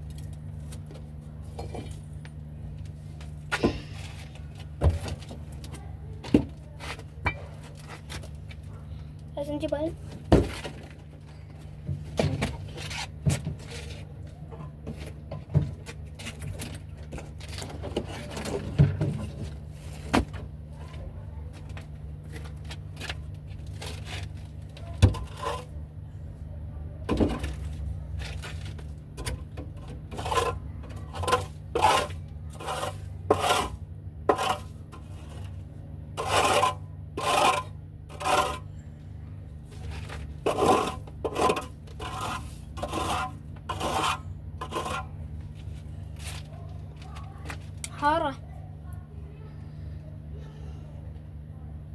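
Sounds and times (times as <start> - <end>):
steady low hum: 0.0 - 51.9
hand scraper scraping floor: 23.8 - 25.8, 29.8 - 35.6, 36.2 - 38.7, 39.8 - 45.2.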